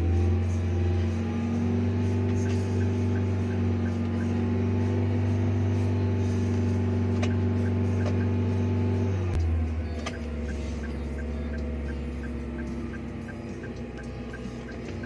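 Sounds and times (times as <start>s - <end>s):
car engine drone: 0.0s - 15.0s
road noise: 0.0s - 15.0s
faint regular ticking: 10.4s - 15.0s.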